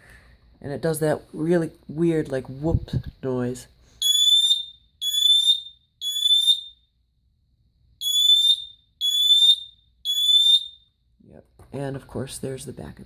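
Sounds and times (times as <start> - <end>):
smoke alarm beeps: 4.0 - 6.9, 8.0 - 11.0.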